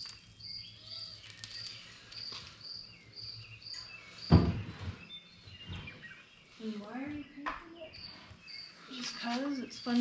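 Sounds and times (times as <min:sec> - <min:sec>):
loud thump: 0:04.3 - 0:05.0.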